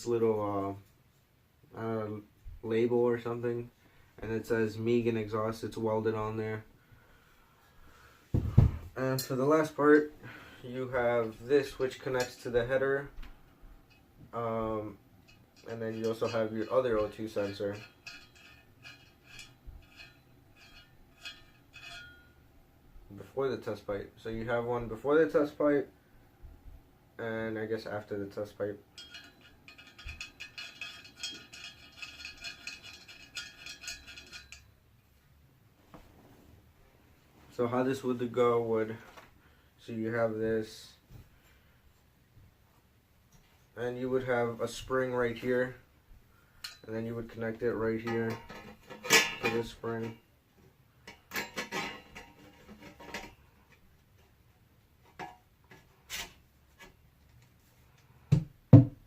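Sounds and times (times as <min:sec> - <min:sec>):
metal exhaust parts clinking: 0:10.9 - 0:22.5, 0:28.0 - 0:35.1, 0:46.5 - 0:50.3, 0:51.0 - 0:53.8, 0:55.0 - 0:57.0.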